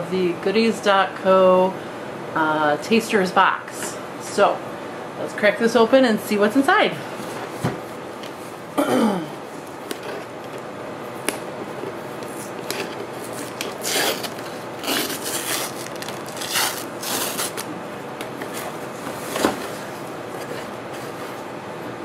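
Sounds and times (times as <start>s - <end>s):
cardboard and paper rustling: 11.8s - 17.7s, 18.4s - 21.5s.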